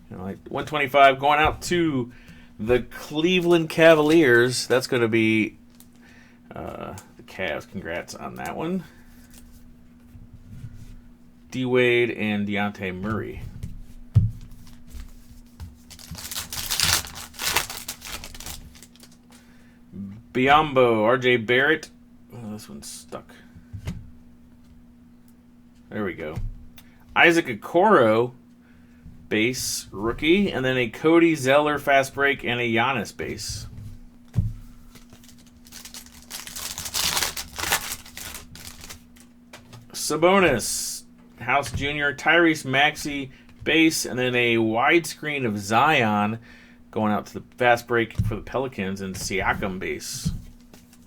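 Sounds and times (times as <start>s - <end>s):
card pack wrapper tearing: 15.9s - 19.4s, 34.9s - 39.3s.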